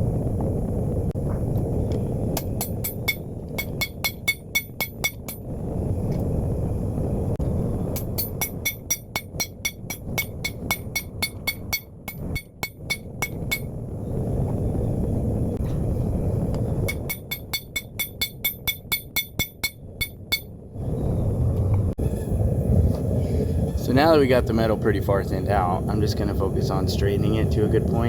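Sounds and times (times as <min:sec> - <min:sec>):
hammer ringing on hot steel: 0:02.3 - 0:05.5, 0:07.9 - 0:13.8, 0:16.8 - 0:20.6
low rushing noise: 0:19.9 - 0:28.0.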